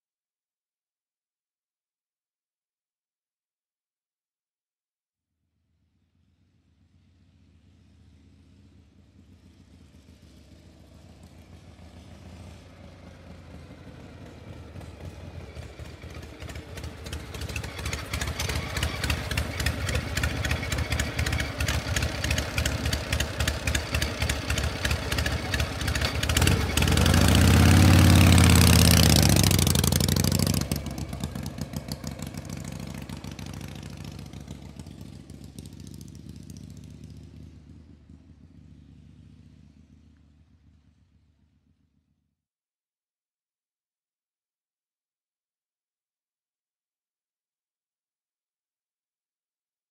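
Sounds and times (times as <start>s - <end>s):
vehicle engine passing: 6.2s - 41.7s.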